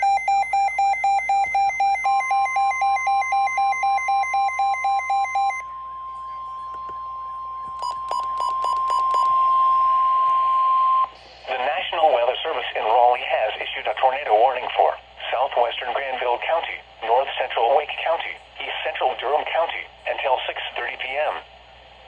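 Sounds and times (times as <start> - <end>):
rapid alarm beeps: 0.0 - 11.1
steady warning alarm tone: 0.0 - 11.2.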